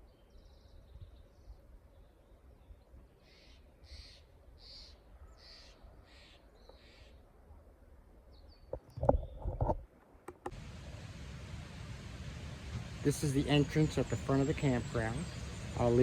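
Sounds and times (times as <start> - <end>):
faint outdoor background: 0.0 - 16.0
bird harsh calls: 3.2 - 7.2, 11.7 - 16.0.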